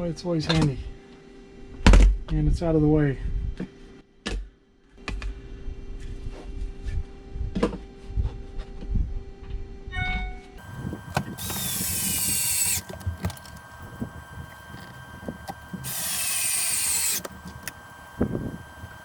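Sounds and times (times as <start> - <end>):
cordless screwdriver whine: 10.6 - 19.0.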